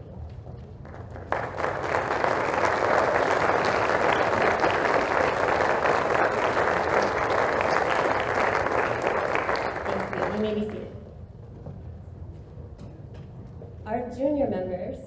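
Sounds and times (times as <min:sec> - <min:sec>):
audience applauding: 0:00.8 - 0:11.0.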